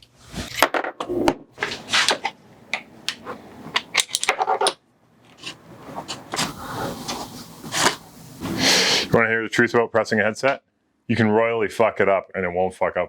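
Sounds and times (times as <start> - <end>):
tools clinking and knocking: 1.6 - 6.4
rubbing: 5.3 - 9.2.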